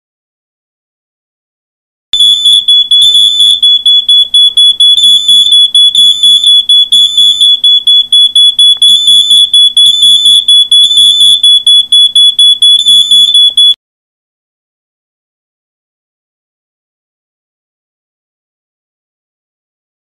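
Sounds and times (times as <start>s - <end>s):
smoke alarm tone: 2.2s - 13.8s.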